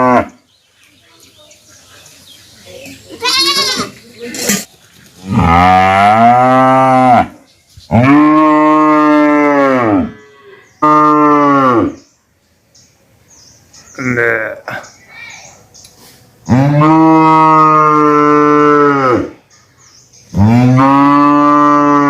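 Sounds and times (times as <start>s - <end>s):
cow mooing: 5.2s - 12.0s, 16.5s - 19.4s, 20.4s - 22.0s.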